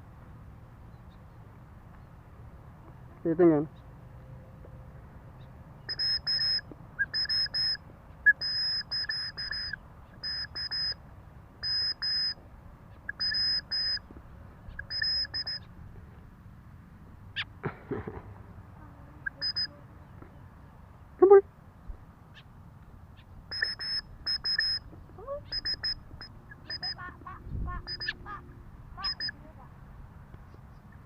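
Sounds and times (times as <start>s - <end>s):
bird calling harsh nasal notes: 5.8s - 11.0s, 11.6s - 15.8s, 18.9s - 19.9s, 22.3s - 29.6s.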